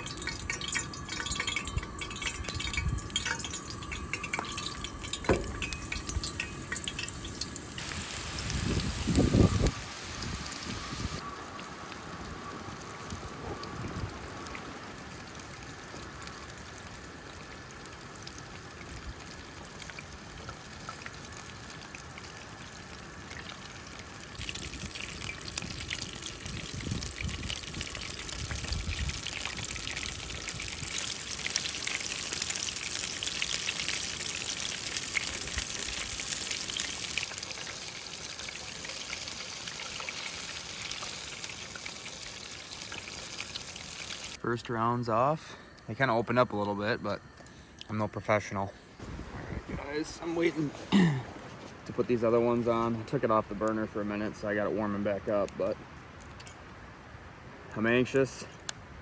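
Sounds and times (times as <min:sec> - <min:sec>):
food sizzling in hot oil: 0:00.0 - 0:44.4.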